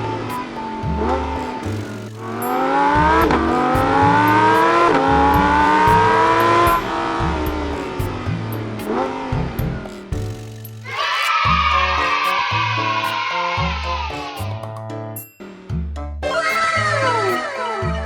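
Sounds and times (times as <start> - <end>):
background music with bass beat: 0.0 - 12.7, 13.6 - 16.3
engine revving: 1.0 - 10.9.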